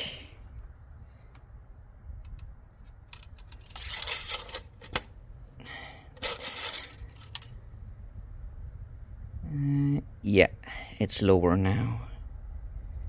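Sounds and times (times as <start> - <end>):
dipstick scraping and rustling: 2.2 - 5.1, 6.1 - 7.6.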